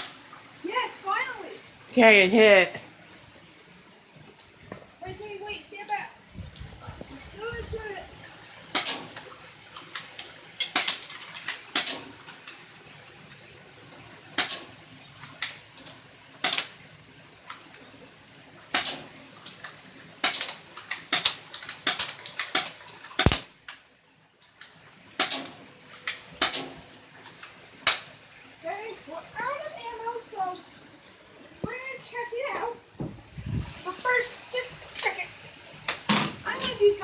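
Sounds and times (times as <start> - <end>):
airsoft gun shots: 23.2 - 23.5
deep thump: 33.0 - 33.2.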